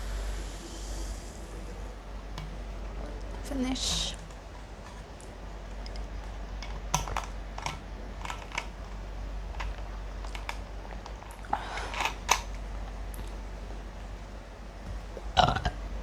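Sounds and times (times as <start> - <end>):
objects clicking and knocking: 3.9 - 13.3.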